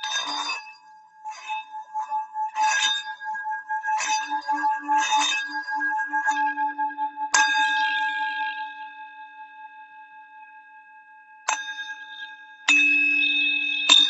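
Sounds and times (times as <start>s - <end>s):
singing bowl ringing: 0.0s - 8.8s, 12.7s - 14.0s.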